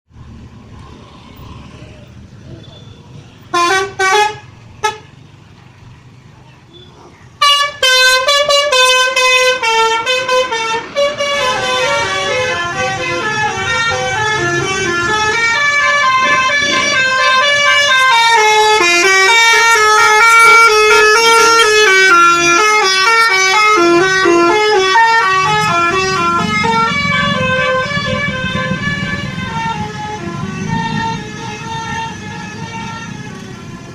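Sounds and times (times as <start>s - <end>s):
bus engine rumble: 0.1s - 33.9s
bus melodic horn tune: 3.4s - 5.1s, 7.4s - 33.6s.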